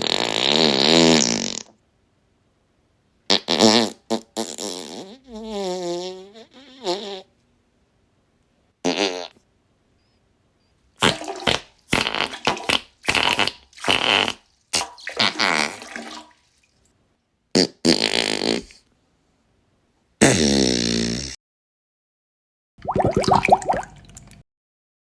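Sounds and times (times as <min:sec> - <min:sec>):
fart sound effects: 0:00.0 - 0:01.8, 0:03.3 - 0:07.3, 0:08.8 - 0:09.4, 0:11.0 - 0:16.3, 0:17.6 - 0:18.8, 0:20.2 - 0:21.4.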